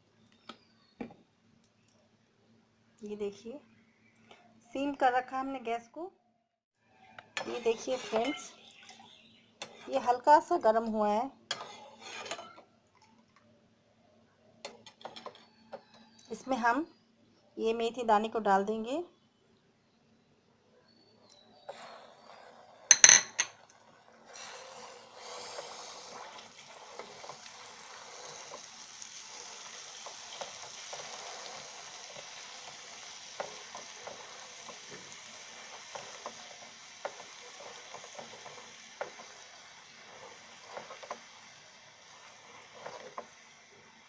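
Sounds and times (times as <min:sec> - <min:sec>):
seeds sizzling in oil: 0:07.2 - 0:12.5, 0:21.3 - 0:44.0
spoon clinking on metal bowl: 0:22.9 - 0:23.5.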